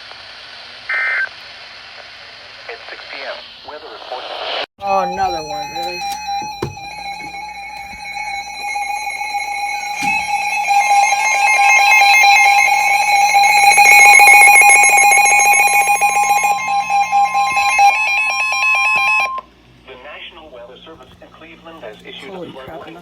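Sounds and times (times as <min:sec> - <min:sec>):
emergency alert tone: 0:04.8 - 0:19.5.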